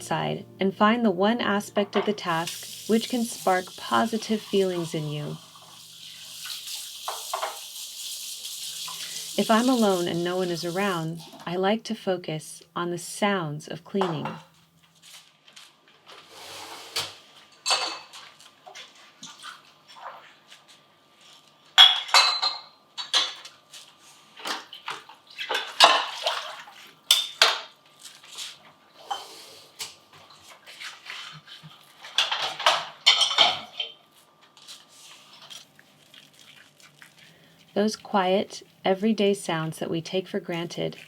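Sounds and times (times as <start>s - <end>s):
water splashing: 2.2s - 11.3s, 35.4s - 38.4s
plates and cutlery clinking: 17.6s - 18.3s, 32.1s - 34.0s.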